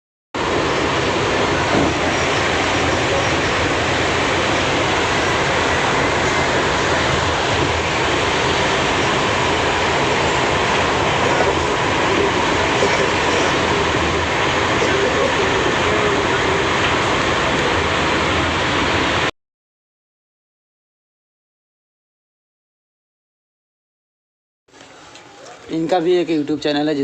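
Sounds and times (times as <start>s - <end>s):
train rumbling: 0.4s - 19.3s.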